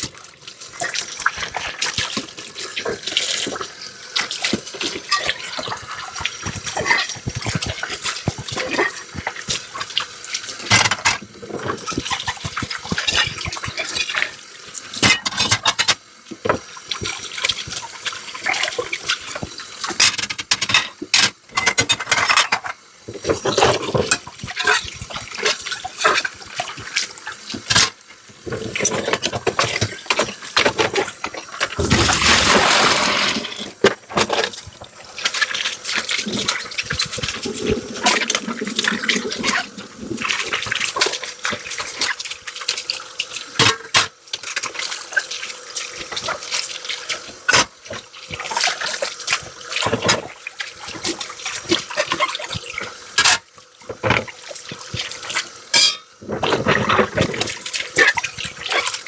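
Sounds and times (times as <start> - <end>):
tap water running and splashing: 0.0 - 59.0
dishes clinking and knocking: 15.0 - 16.6, 55.7 - 57.4
loud gush of water: 23.2 - 59.0.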